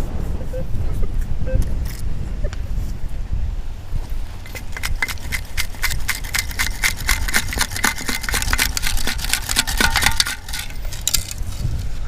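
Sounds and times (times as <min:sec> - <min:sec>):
wind rumble on microphone: 0:00.0 - 0:12.0
sand scraping in scoop: 0:04.4 - 0:12.0.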